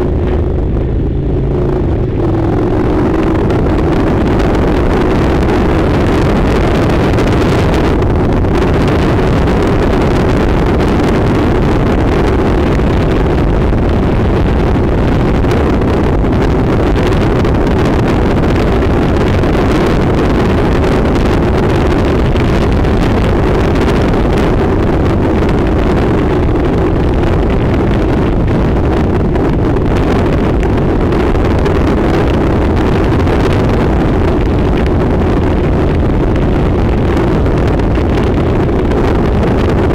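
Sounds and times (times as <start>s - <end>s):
motorcycle engine running: 0.0s - 39.9s
wind buffeting microphone: 0.0s - 39.9s.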